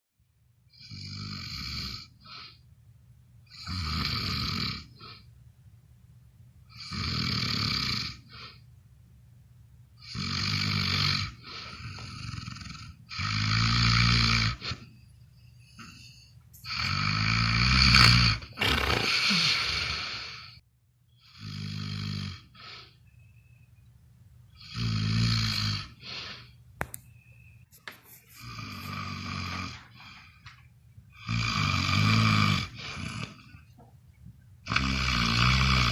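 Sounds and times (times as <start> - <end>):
heavy snoring: 16.8 - 20.4, 34.7 - 35.9.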